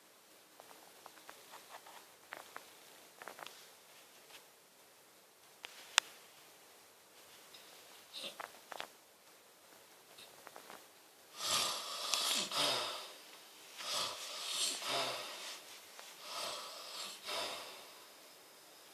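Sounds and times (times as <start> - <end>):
person snoring: 11.3 - 13.2, 13.8 - 15.6, 16.2 - 18.0.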